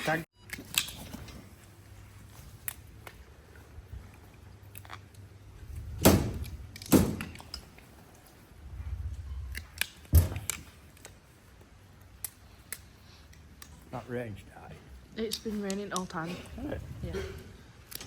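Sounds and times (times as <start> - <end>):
low rumble: 8.6 - 9.6.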